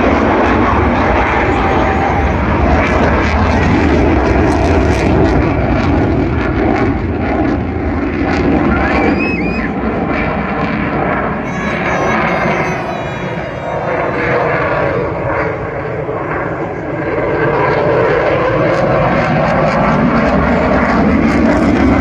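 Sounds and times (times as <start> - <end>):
jet engines roaring with crackle: 0.0 - 22.0.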